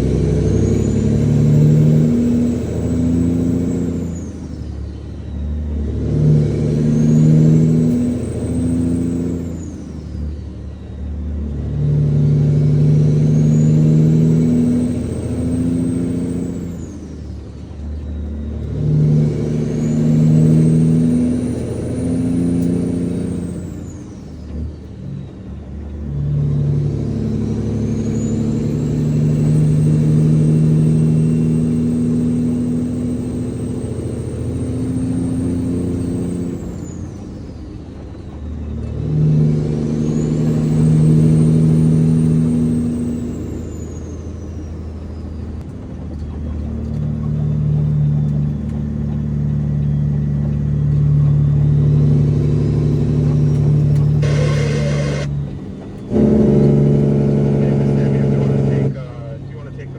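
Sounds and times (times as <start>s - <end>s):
truck diesel engine accelerating: 0.0s - 59.9s
turbo whistle: 47.4s - 55.4s.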